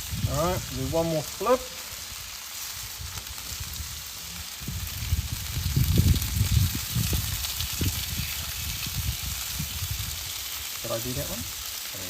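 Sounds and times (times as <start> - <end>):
meat sizzling on a grill: 0.0 - 12.0.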